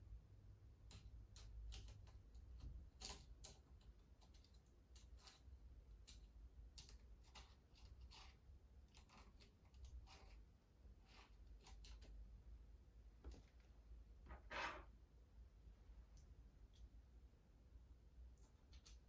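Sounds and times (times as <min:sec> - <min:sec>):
small tool clicking on screws: 0:00.8 - 0:05.4, 0:06.0 - 0:10.4.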